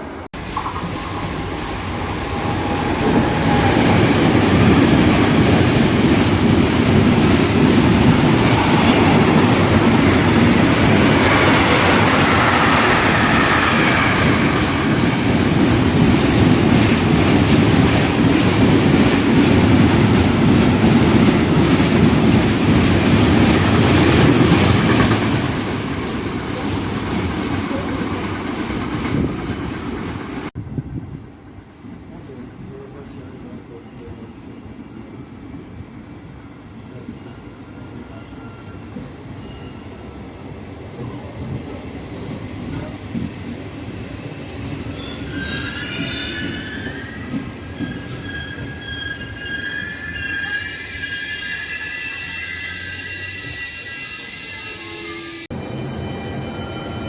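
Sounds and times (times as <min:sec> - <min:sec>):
train wheels on rails: 0:00.0 - 0:31.0, 0:31.6 - 0:57.0
clickety-clack over rail joints: 0:04.2 - 0:30.7.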